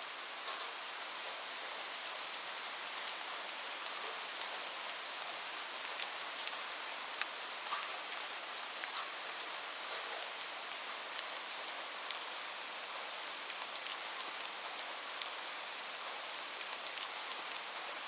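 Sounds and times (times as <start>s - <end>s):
light rain hissing: 0.0s - 18.0s.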